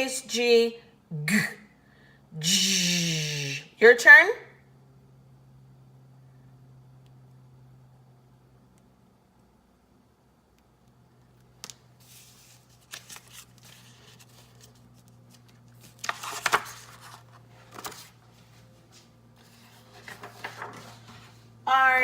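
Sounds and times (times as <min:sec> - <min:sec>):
faint steady hum: 0:00.0 - 0:22.0.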